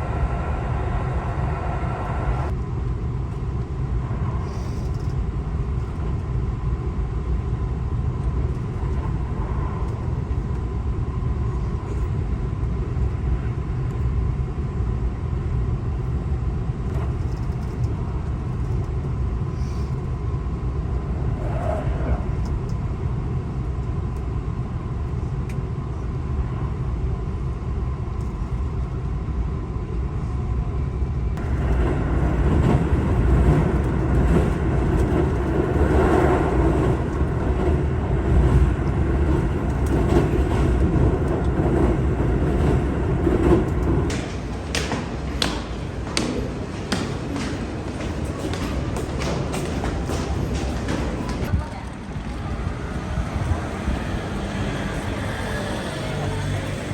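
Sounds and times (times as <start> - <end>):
road traffic rumble: 31.4 - 56.9.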